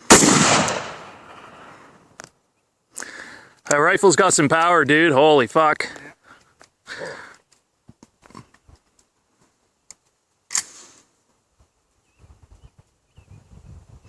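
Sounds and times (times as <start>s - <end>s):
soft breathy sound: 2.9s - 3.6s, 5.9s - 7.5s.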